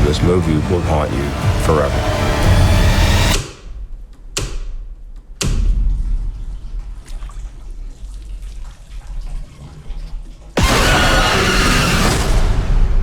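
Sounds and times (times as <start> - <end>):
loud noisy burst: 10.6 - 13.0.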